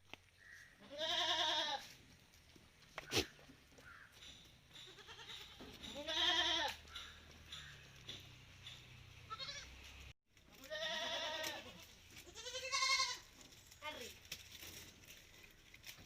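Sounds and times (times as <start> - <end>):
goat bleating: 0.8 - 2.0, 4.8 - 6.9, 9.2 - 9.9, 10.5 - 14.0.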